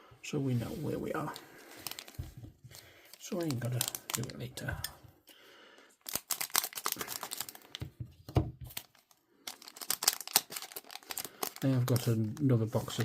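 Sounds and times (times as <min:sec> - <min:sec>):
foil wrappers crinkling: 0:01.6 - 0:04.7, 0:06.0 - 0:07.9, 0:08.7 - 0:13.0.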